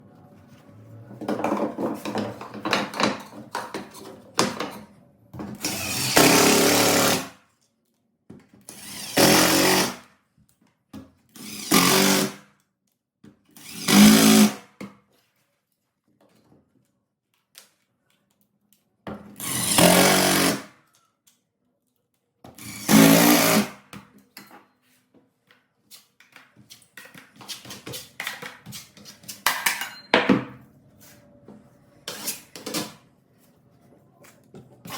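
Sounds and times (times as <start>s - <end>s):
clattering and scraping: 1.1s - 4.9s
handheld power tool running: 5.6s - 7.3s, 8.8s - 10.0s, 11.4s - 12.3s, 13.6s - 14.6s, 19.5s - 20.7s, 22.6s - 23.7s.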